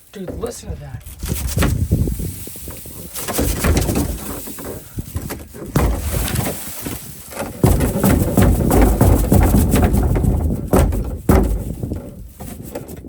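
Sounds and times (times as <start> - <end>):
wind buffeting microphone: 0.3 - 13.0
ice crackling and crunching: 0.8 - 10.4.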